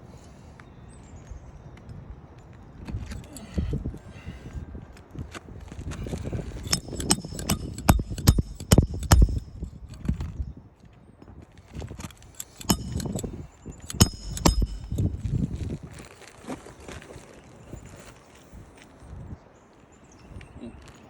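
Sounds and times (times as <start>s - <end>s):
hammer striking roofing nails: 6.7s - 9.6s, 13.9s - 15.2s.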